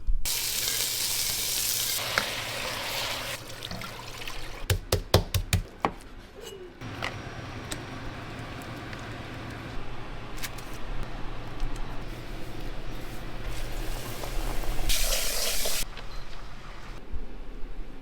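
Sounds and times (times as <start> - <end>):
loud cooking hiss: 0.3 - 3.4, 13.5 - 15.8.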